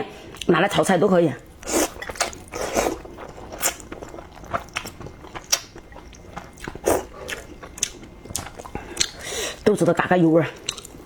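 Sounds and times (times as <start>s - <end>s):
person chewing and biting: 1.5s - 9.6s, 10.6s - 11.0s.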